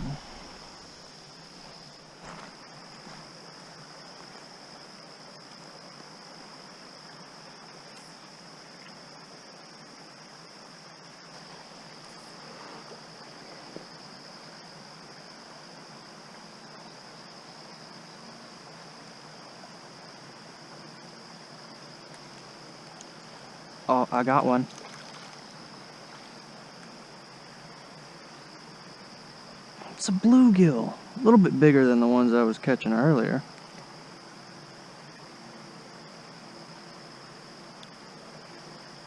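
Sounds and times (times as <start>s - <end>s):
creek water rushing: 0.0s - 39.0s
insects trilling: 0.0s - 39.0s.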